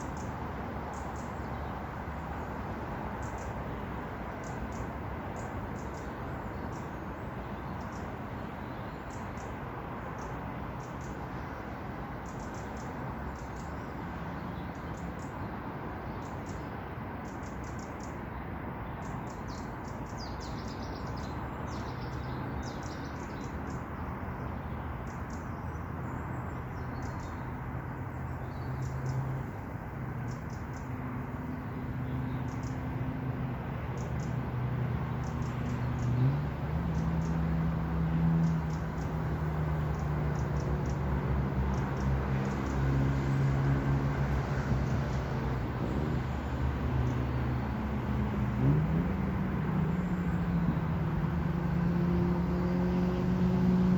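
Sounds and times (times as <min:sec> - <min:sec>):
vehicle engine accelerating: 0:30.9 - 0:53.9.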